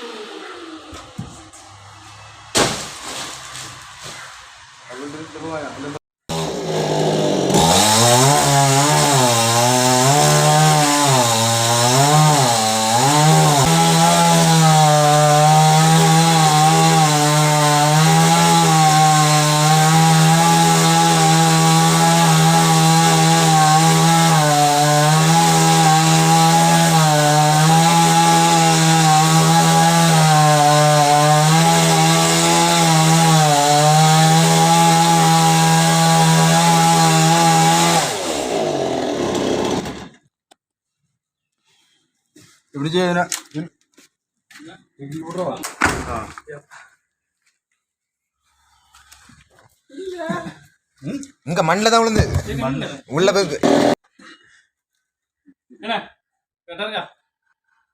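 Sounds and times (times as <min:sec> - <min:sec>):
chainsaw engine revving: 0:06.3 - 0:40.2, 0:53.4 - 0:54.0.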